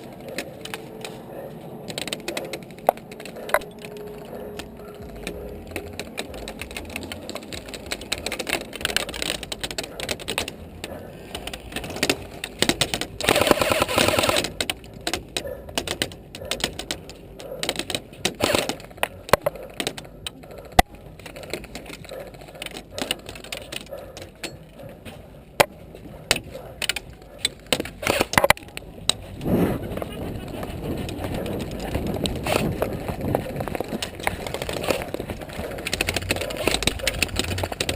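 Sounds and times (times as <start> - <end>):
airsoft rifle full-auto burst: 13.2 - 14.5, 18.4 - 18.8.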